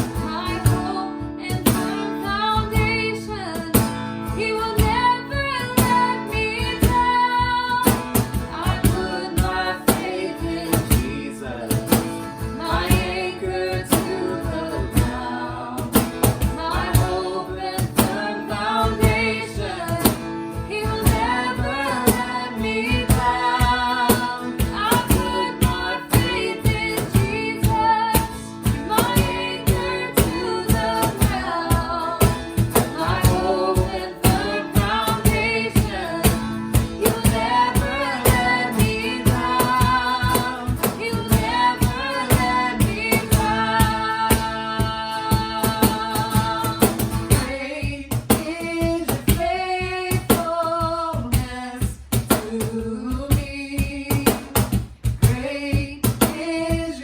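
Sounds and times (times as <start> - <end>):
woman singing lead: 0.0 - 57.0
worship band music: 3.8 - 48.5.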